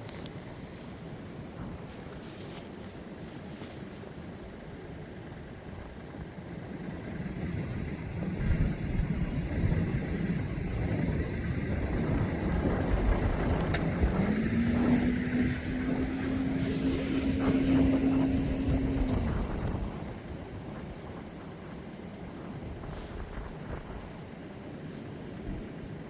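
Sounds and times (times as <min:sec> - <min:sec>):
motor engine running: 0:00.1 - 0:25.8.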